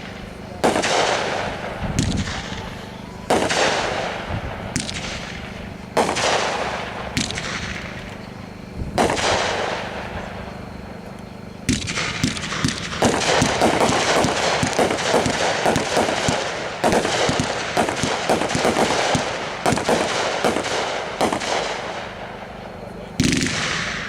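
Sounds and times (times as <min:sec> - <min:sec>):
fireworks bursts: 0:00.0 - 0:24.0.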